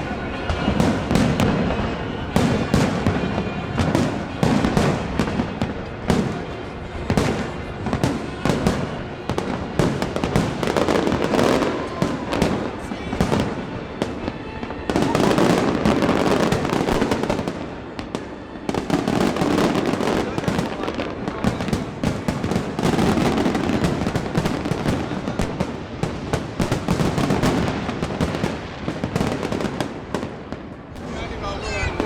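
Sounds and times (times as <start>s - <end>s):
fireworks crackling: 0.0s - 32.0s.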